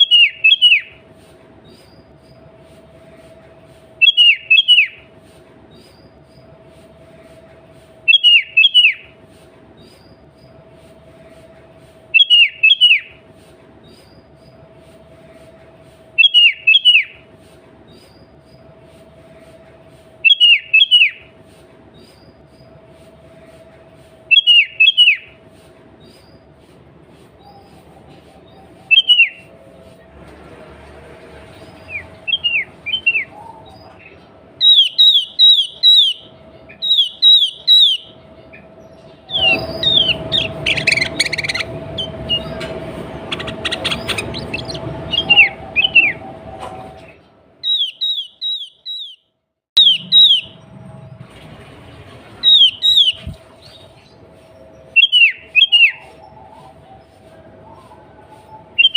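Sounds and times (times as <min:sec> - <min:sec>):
bulbul whistled calls: 0:00.0 - 0:01.0, 0:04.0 - 0:05.1, 0:08.1 - 0:09.2, 0:12.1 - 0:13.2, 0:16.2 - 0:17.3, 0:20.2 - 0:21.3, 0:24.3 - 0:25.4, 0:27.4 - 0:29.5, 0:31.6 - 0:38.2, 0:39.2 - 0:49.2, 0:49.8 - 0:50.6, 0:52.4 - 0:58.9.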